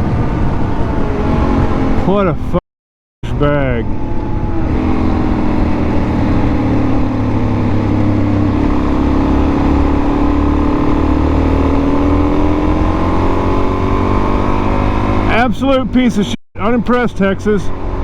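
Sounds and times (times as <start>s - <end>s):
wind rumble on microphone: 0.0s - 2.6s, 3.2s - 16.0s
dirt bike engine running: 3.3s - 15.7s.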